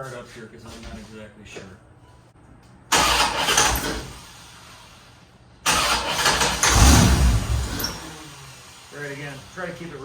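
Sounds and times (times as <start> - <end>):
car engine starting and dying: 2.9 - 9.8.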